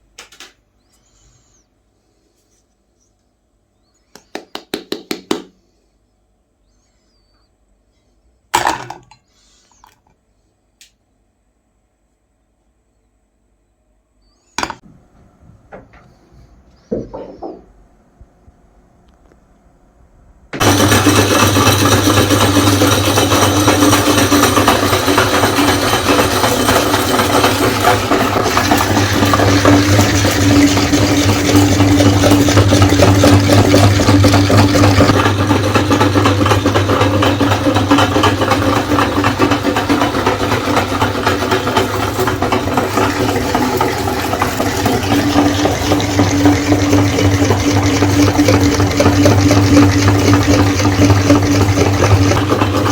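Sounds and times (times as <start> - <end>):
meat grinder motor humming: 20.6 - 52.9.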